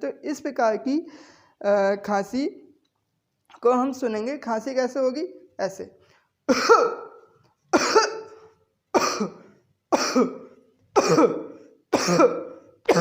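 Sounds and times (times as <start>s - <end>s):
harsh barking cough: 6.5s - 13.0s.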